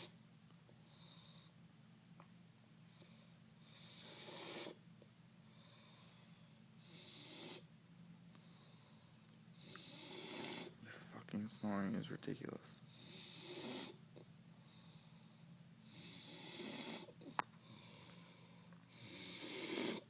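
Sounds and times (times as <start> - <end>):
faint breaths: 2.8 - 7.7, 8.3 - 11.9, 12.5 - 20.0
man snoring: 9.6 - 10.8, 13.0 - 14.0, 15.9 - 17.1, 19.0 - 20.0.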